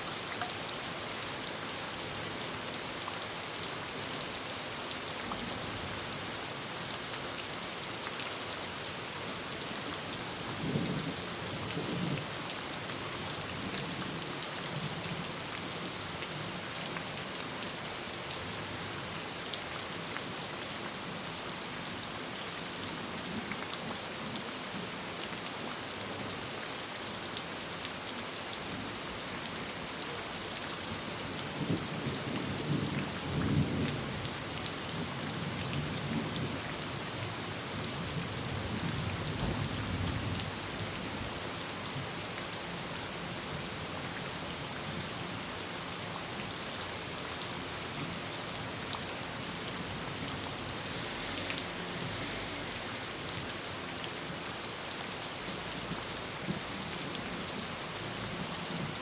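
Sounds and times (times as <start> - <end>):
heavy rain on a tin roof: 0.0 - 59.0
low rumble of thunder: 10.5 - 12.4, 37.9 - 41.3.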